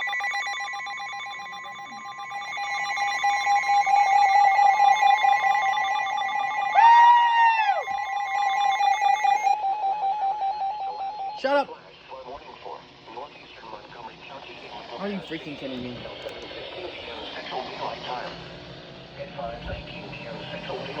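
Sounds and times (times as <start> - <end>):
electronic alarm tone: 0.0 - 11.6.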